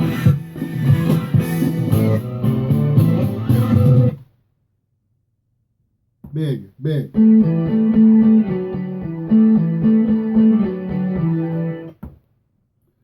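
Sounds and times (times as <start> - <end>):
plucked guitar melody: 7.1 - 11.9.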